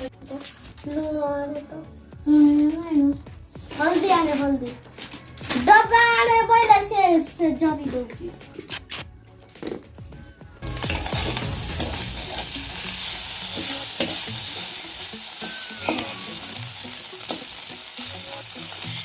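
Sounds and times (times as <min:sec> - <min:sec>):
food sizzling in hot oil: 0:10.6 - 0:19.0.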